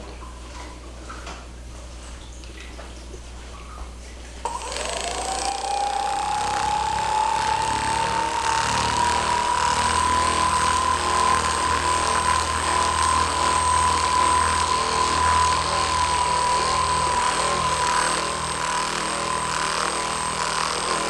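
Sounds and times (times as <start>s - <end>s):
electric massager motor whine: 4.4s - 21.0s
buzzing rattle: 4.5s - 21.0s.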